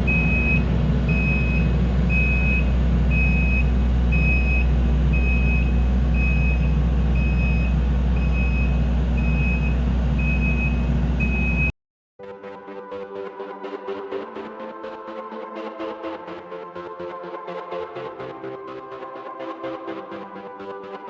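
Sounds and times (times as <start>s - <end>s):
diesel engine running: 0.0s - 11.7s
reversing alarm beeping: 0.1s - 11.7s.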